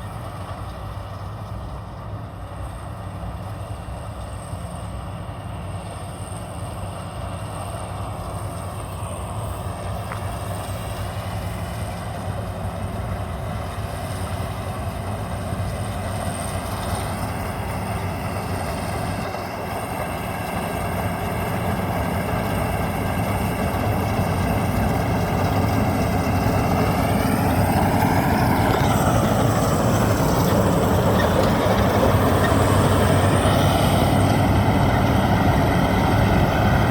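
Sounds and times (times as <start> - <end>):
combine harvester engine drone: 0.0 - 36.9.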